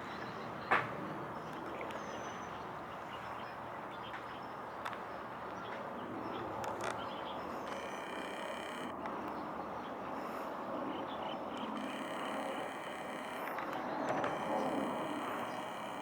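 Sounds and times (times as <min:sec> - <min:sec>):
outdoor background noise: 0:00.0 - 0:16.0
faint ticks: 0:06.6 - 0:09.4, 0:11.5 - 0:16.0.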